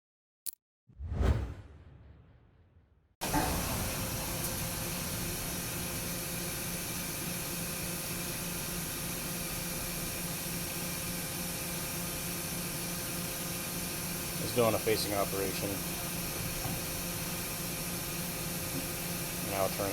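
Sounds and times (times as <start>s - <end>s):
cnc lathe cutting hiss and hum: 3.2s - 19.9s.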